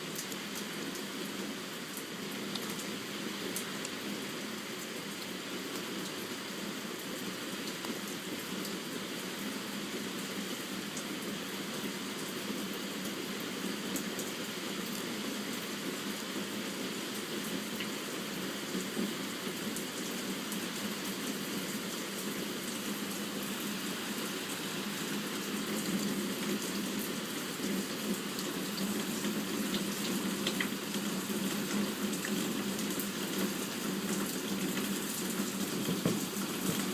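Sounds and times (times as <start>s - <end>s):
steady rain falling: 0.0s - 36.9s.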